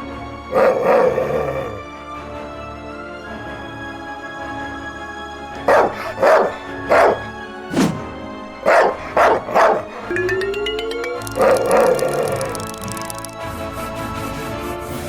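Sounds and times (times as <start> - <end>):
background music: 0.0 - 15.0
dog barking: 0.5 - 1.2, 5.6 - 7.4, 8.6 - 10.1.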